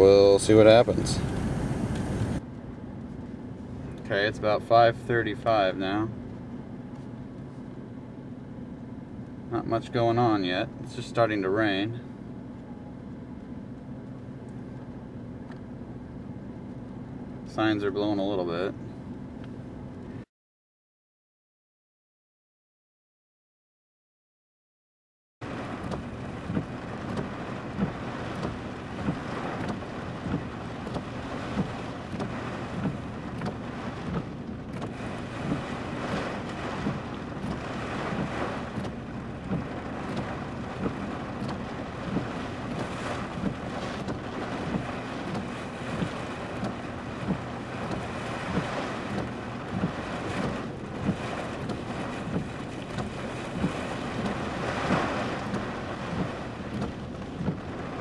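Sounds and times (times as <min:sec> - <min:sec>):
wind and rain rushing: 0:00.0 - 0:02.4, 0:25.4 - 0:58.0.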